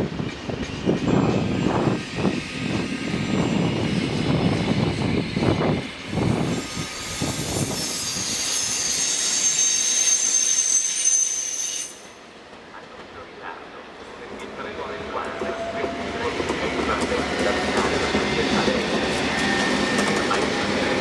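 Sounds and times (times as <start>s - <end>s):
train rumbling with wheel knocks: 0.0s - 8.1s, 14.2s - 21.0s.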